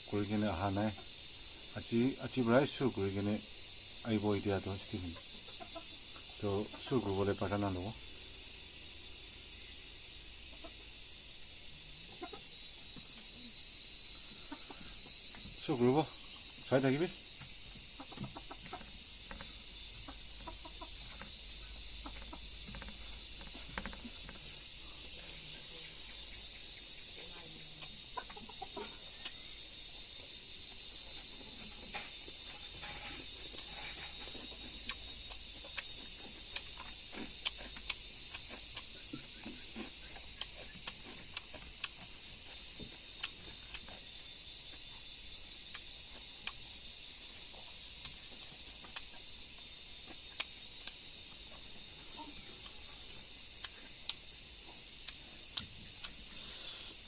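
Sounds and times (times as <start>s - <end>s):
crickets chirring: 0.0s - 57.0s
chickens clucking: 4.6s - 7.9s, 10.4s - 11.0s, 12.0s - 13.4s, 14.2s - 16.1s, 16.8s - 27.2s, 27.8s - 29.4s.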